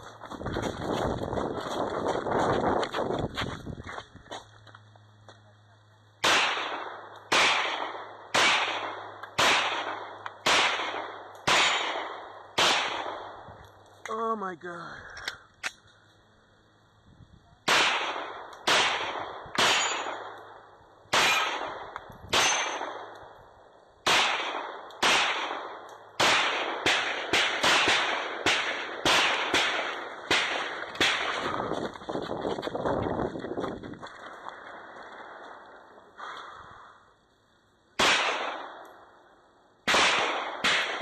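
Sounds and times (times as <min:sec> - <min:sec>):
gunshots with ringing tail: 0:06.2 - 0:13.5, 0:17.6 - 0:23.2, 0:24.0 - 0:31.7, 0:38.0 - 0:39.2, 0:39.8 - 0:41.0.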